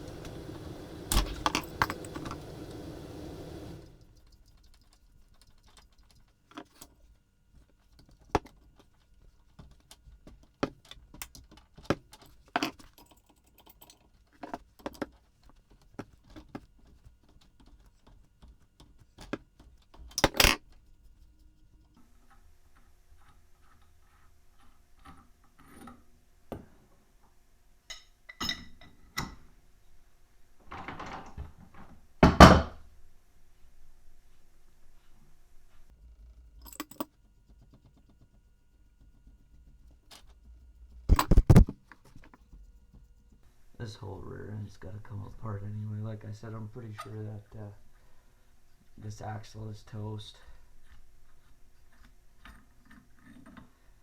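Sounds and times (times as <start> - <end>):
steel tools clinking and clanking: 0.0 - 3.8, 27.9 - 29.4
steady running noise: 0.0 - 4.2.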